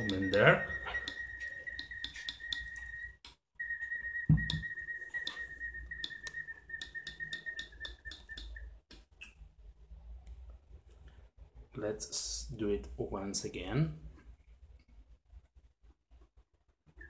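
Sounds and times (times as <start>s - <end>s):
mechanism ticking and clicking: 0.0s - 3.4s, 4.4s - 9.4s
automaton whistling high note: 0.0s - 8.7s.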